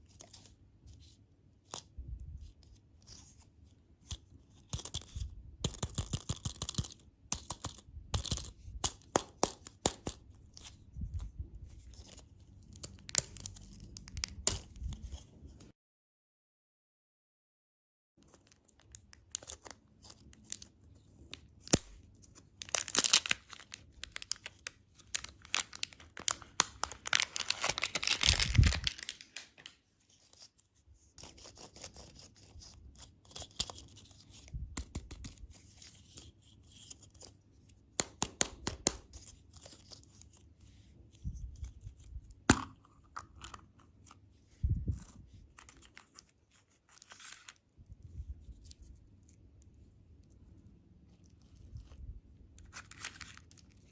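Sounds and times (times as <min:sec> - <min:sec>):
plastic wrappers tearing and crinkling: 0:22.6 - 0:29.8, 0:52.6 - 0:53.9.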